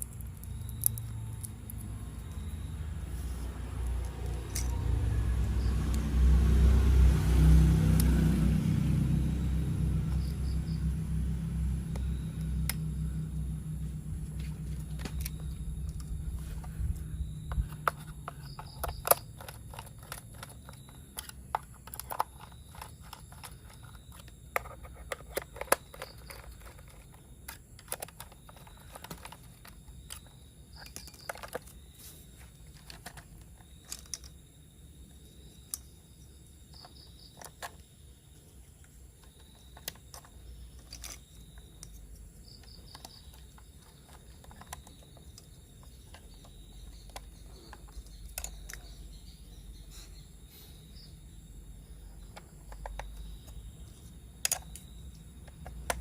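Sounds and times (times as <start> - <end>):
faint steady high whine: 0.0 - 7.0, 8.0 - 56.0
plastic toy parts clicking: 4.2 - 4.7, 17.5 - 31.8, 32.7 - 34.4, 39.2 - 49.0, 52.2 - 53.6, 54.4 - 56.0.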